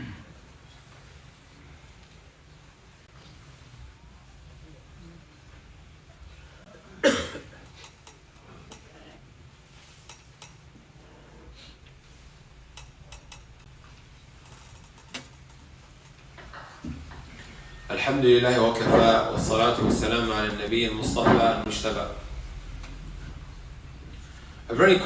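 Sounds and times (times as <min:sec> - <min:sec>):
steady low hum: 0:00.0 - 0:25.0
small clicks and knocks: 0:12.7 - 0:17.2.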